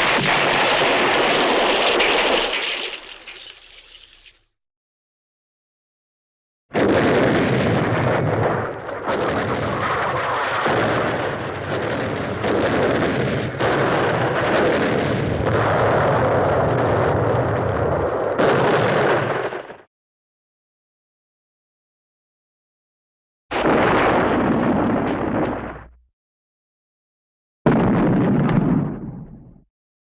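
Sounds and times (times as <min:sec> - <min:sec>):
explosion booms and rumble: 0:00.0 - 0:02.6, 0:06.7 - 0:19.9, 0:23.5 - 0:26.1, 0:27.7 - 0:29.7.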